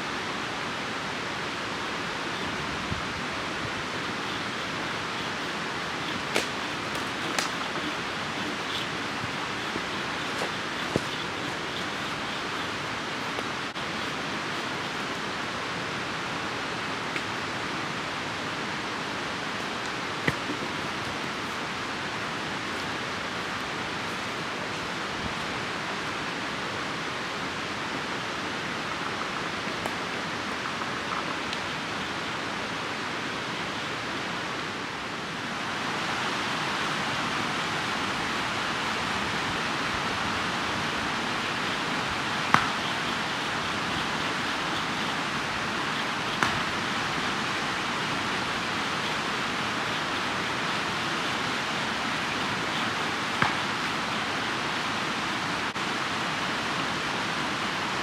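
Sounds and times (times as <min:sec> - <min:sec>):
steady rushing noise: 0:00.0 - 0:58.0
sharp pops: 0:05.4 - 0:13.5.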